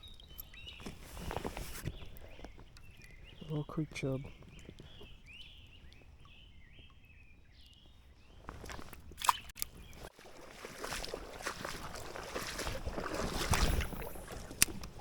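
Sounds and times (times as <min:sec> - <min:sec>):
rustling and crackling movement: 0:00.0 - 0:05.2
small birds chirping: 0:00.0 - 0:10.1.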